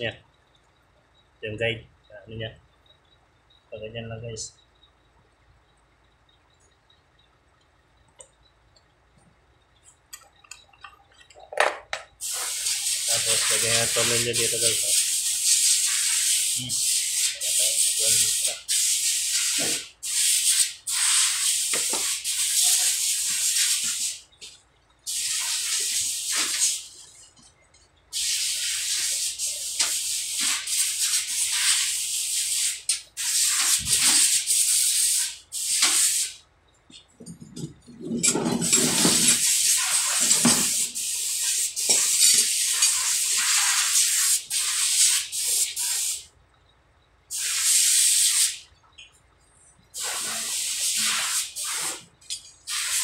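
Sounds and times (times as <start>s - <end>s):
hissing blasts: 12.2s - 24.3s, 25.1s - 27.0s, 28.1s - 36.4s, 38.7s - 46.2s, 47.3s - 48.6s, 50.0s - 52.0s, 52.7s - 53.0s.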